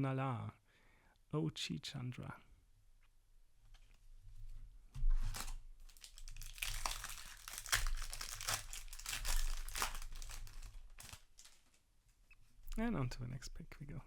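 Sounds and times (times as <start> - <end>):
foil wrapper crinkling: 5.2 - 11.8.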